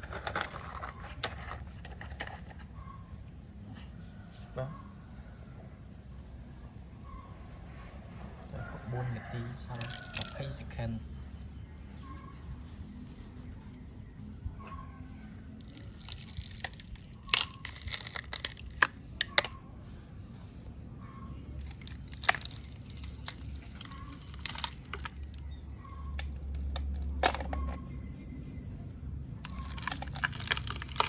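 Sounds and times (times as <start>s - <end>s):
crackling and crunching clicks: 9.8s - 10.4s, 15.6s - 19.6s, 21.6s - 27.6s, 29.4s - 31.0s.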